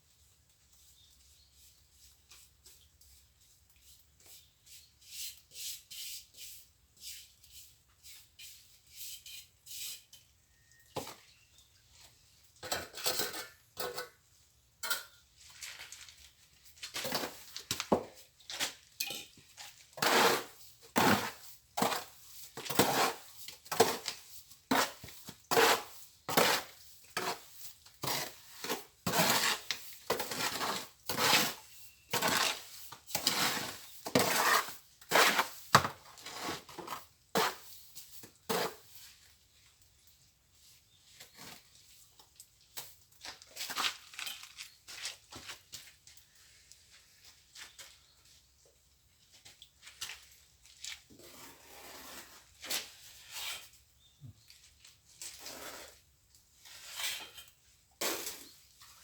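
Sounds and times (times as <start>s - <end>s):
steel trowel scraping mortar: 4.3s - 10.3s, 20.0s - 39.1s, 51.1s - 53.8s, 56.6s - 58.6s.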